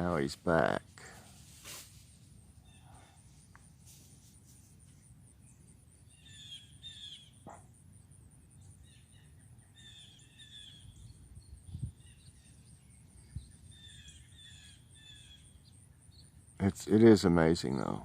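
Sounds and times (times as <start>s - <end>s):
songbirds singing: 2.0s - 3.8s, 4.4s - 18.0s.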